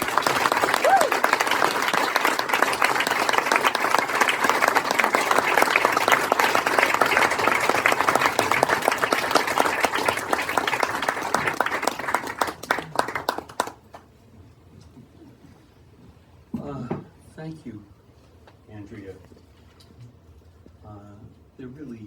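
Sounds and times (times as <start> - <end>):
audience applauding: 0.0 - 14.1.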